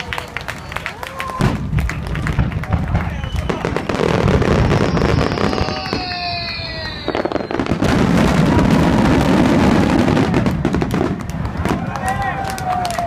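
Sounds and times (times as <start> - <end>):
fireworks crackling rumble: 0.0 - 13.0
fireworks popping and booming: 1.3 - 13.0
falling firework whistle: 2.9 - 11.0.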